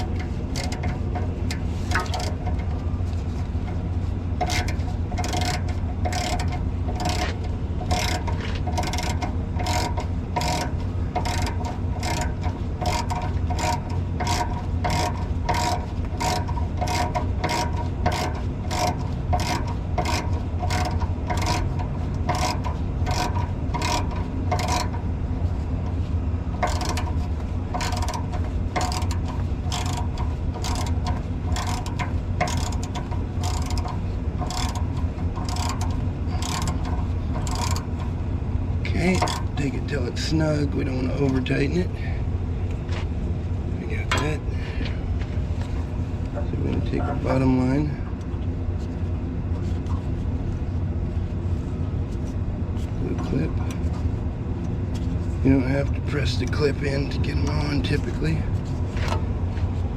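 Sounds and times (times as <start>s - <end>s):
ratchet wrench clicking: 0.0s - 2.7s, 3.6s - 25.0s, 26.6s - 38.1s, 38.9s - 39.8s.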